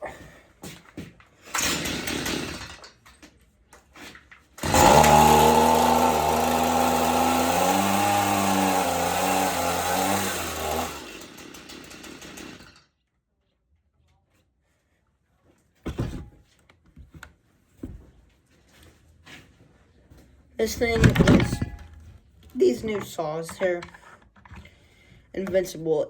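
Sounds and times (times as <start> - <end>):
chainsaw running unevenly: 1.5 - 2.9, 4.6 - 12.8.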